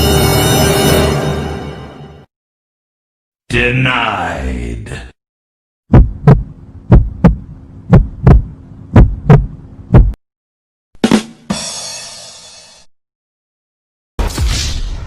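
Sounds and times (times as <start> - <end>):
heartbeat thumps: 5.9 - 10.2.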